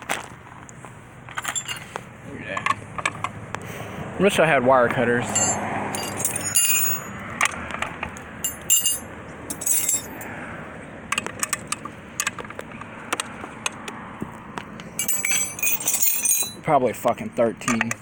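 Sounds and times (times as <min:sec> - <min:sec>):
metal hand tools clinking: 0:01.3 - 0:02.0, 0:05.2 - 0:07.1, 0:08.4 - 0:10.2, 0:15.0 - 0:16.7.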